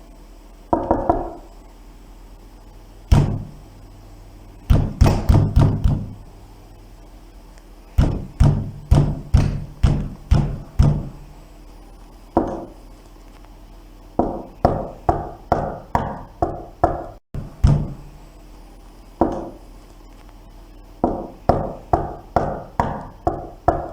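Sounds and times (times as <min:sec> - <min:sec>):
heavy banging on a door: 0:03.1 - 0:03.6, 0:04.7 - 0:06.2, 0:08.0 - 0:11.2, 0:14.2 - 0:18.0.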